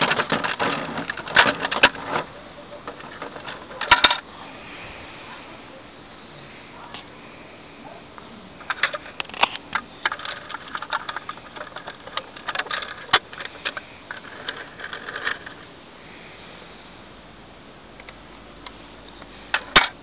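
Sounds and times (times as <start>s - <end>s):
plastic toy clicking and rattling: 0.0s - 4.2s, 8.6s - 15.6s.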